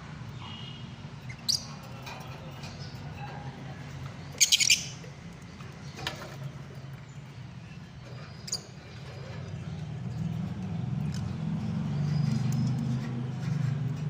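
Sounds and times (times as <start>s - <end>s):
lovebird chirps: 4.4s - 5.0s.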